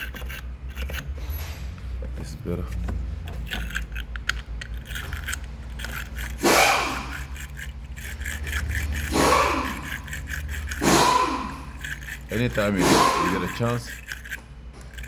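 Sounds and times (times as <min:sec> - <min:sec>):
brush scrubbing metal: 0:05.7 - 0:15.0.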